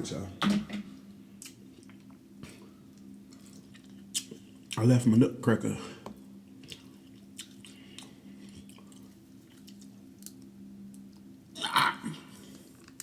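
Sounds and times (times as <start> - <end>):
steady low hum: 0.0 - 13.0
close-up chewing and mouth sounds: 1.4 - 4.8, 6.5 - 11.3.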